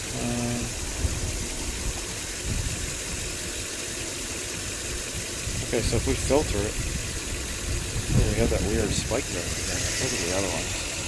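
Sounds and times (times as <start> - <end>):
engine idling with misfire: 0.0 - 11.0.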